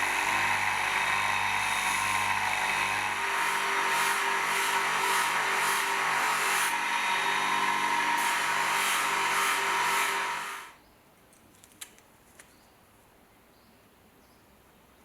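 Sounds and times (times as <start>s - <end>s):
high pulsing rasp: 0.0s - 10.7s
power tool motor hum: 0.0s - 10.8s.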